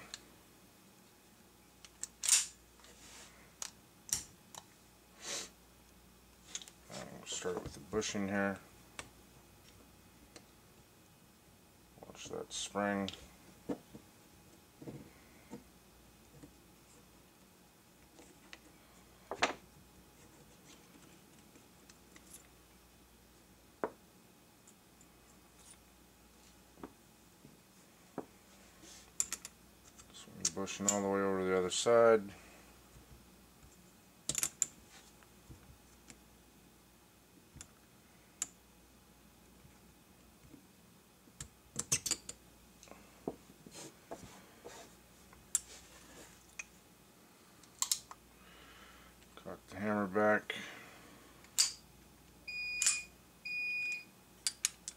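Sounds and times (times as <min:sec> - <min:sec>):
pistol parts clicking: 0:01.8 - 0:02.5.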